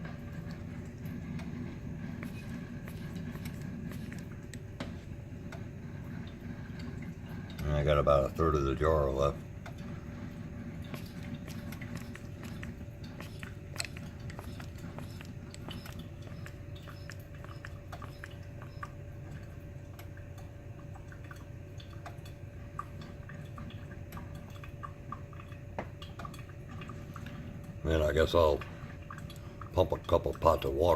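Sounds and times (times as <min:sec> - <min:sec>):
coffee maker hissing: 0:00.0 - 0:19.6, 0:26.8 - 0:30.9
faint steady hum: 0:00.0 - 0:30.9.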